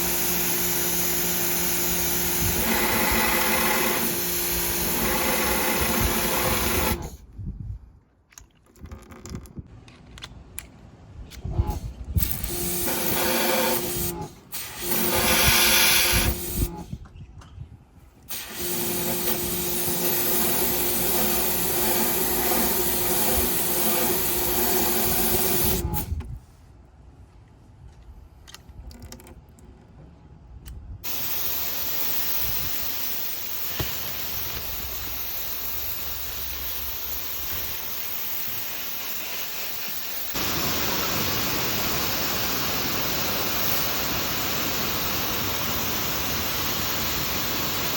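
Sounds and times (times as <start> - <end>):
pump motor hum: 0.0 - 7.1, 11.5 - 16.9, 18.3 - 26.1, 31.0 - 47.9
pressure washer spraying water: 0.0 - 7.2, 12.4 - 16.9, 18.3 - 26.1, 31.0 - 47.9.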